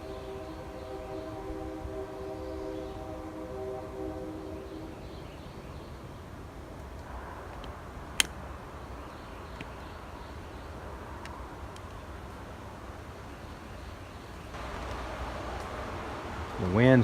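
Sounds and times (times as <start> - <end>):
distant train horn: 0.0 - 5.8
low rumble of passing train: 0.0 - 17.0.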